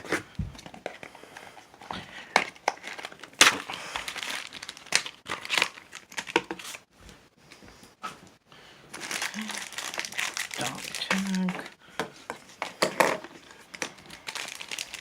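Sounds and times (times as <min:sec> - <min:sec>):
packaging torn and crinkled: 0:02.4 - 0:06.8, 0:08.9 - 0:11.8, 0:13.4 - 0:15.0.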